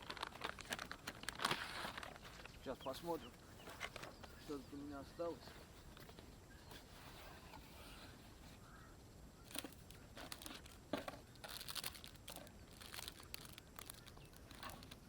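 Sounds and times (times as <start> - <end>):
plastic packaging crinkling: 0.0 - 2.7, 9.5 - 15.0.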